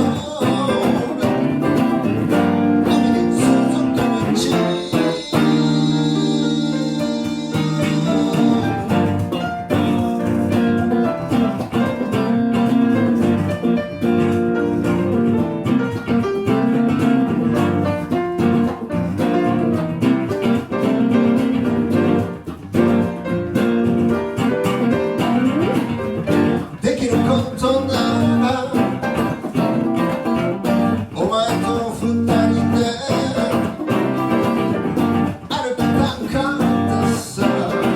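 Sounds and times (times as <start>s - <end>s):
live band with guitar: 0.0s - 37.9s.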